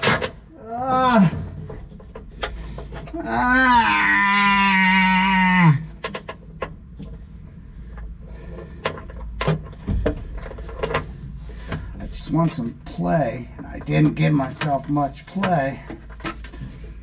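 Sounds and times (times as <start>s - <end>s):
man groaning with strain: 0.5s - 1.5s, 3.1s - 5.8s
clicks and knocks on metal fittings: 5.9s - 12.6s.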